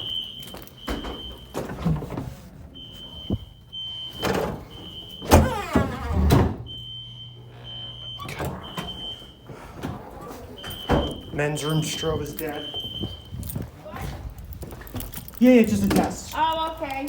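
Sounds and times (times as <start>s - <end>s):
fire alarm horn beeping: 0.0s - 9.8s, 10.4s - 13.6s
creak: 5.4s - 6.4s.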